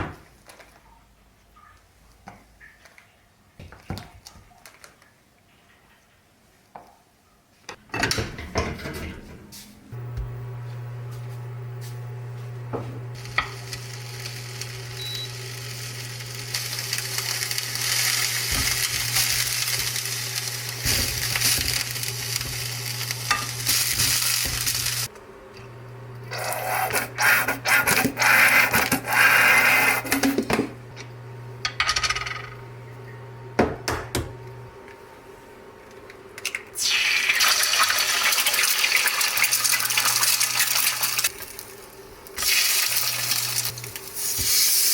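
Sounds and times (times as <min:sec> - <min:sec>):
utensils clinking against pans: 0:07.8 - 0:09.4
steady low hum: 0:09.6 - 0:26.3
food sizzling in a frying pan: 0:13.1 - 0:25.1, 0:36.8 - 0:41.8, 0:42.4 - 0:44.9.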